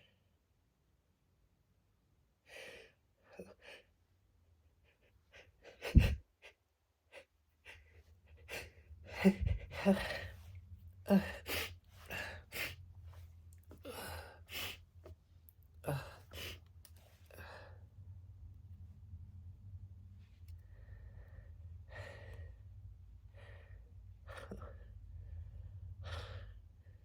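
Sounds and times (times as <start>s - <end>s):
breathy gasps and sighs: 4.9s - 6.2s, 7.2s - 12.8s, 13.7s - 14.8s, 15.8s - 16.7s.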